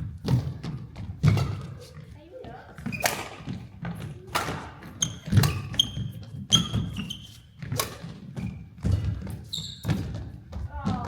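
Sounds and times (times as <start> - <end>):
shoes squeaking on court: 0.0 - 11.0
rackets striking shuttlecock: 2.8 - 6.9, 7.6 - 9.2.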